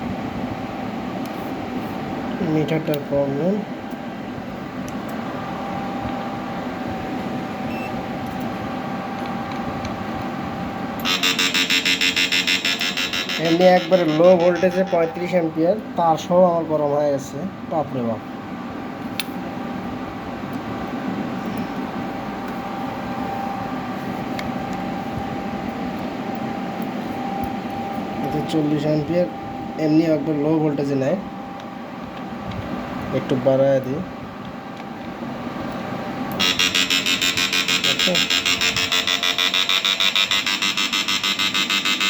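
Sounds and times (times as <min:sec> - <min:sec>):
electrical hum with whine: 0:00.0 - 0:42.0
rapidly pulsing high buzz: 0:10.4 - 0:15.7, 0:36.4 - 0:42.0.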